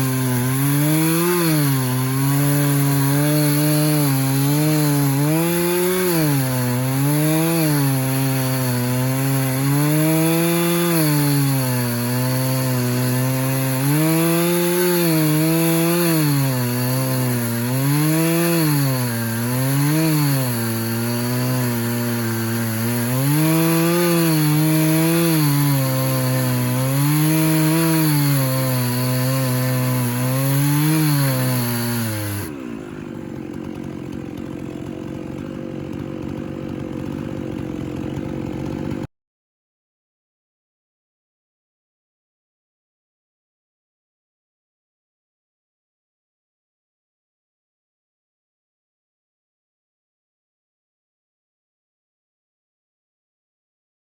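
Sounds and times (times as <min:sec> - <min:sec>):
chainsaw cutting wood: 0:00.0 - 0:39.1.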